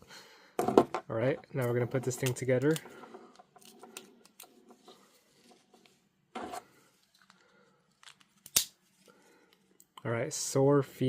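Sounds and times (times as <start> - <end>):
plastic parts clicking: 1.6 - 4.6.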